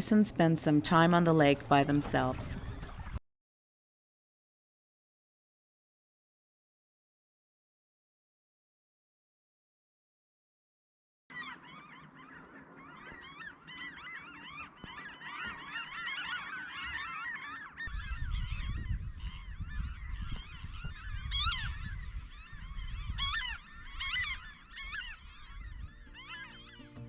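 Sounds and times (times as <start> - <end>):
water birds calling: 0.0 - 3.2, 11.3 - 27.0.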